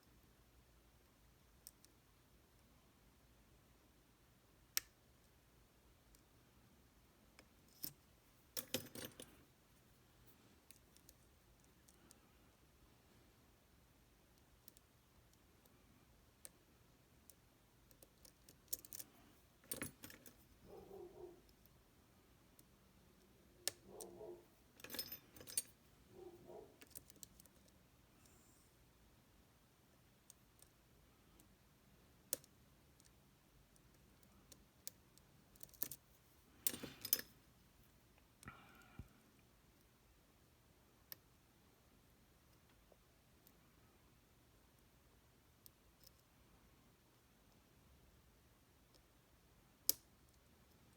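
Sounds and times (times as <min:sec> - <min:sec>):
lock-picking tools clicking in lock: 0:24.8 - 0:25.7.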